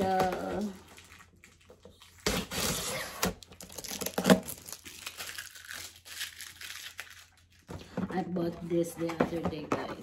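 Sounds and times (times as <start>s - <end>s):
cardboard crinkling and tearing: 0.0s - 7.7s.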